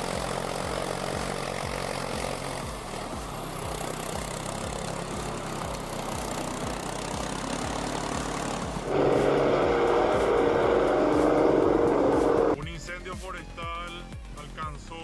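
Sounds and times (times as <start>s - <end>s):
vehicle engine pulsing: 0.0s - 12.6s
loud abrupt sound: 6.2s - 12.6s.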